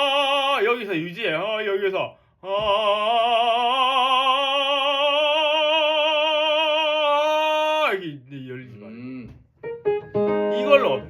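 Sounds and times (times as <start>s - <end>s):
operatic voice singing long note: 2.4s - 7.7s.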